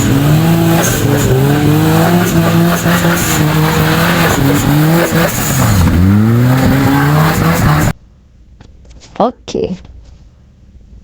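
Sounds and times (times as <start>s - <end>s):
race car engine revving: 0.0s - 8.0s.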